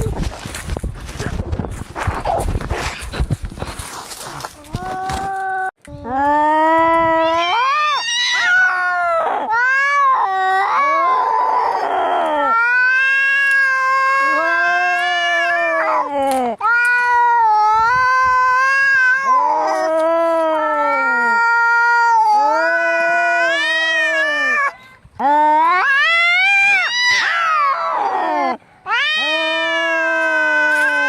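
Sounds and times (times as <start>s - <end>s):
cat yowling: 7.2s - 16.1s, 20.6s - 24.8s, 25.6s - 31.0s.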